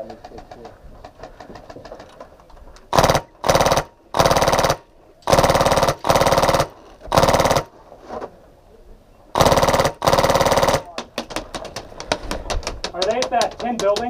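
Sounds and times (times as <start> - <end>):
airsoft machine gun bursts: 2.9 - 7.7, 9.4 - 10.9.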